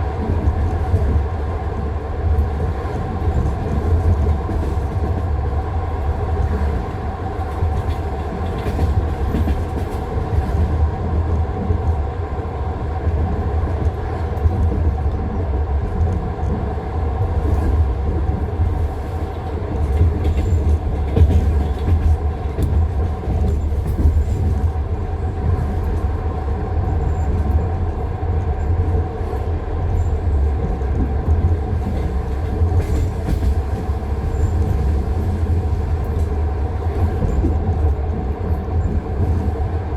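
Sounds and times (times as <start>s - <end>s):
steady low train rumble: 0.0s - 39.9s
train wheels clacking over rail joints: 19.7s - 24.8s, 31.4s - 36.4s.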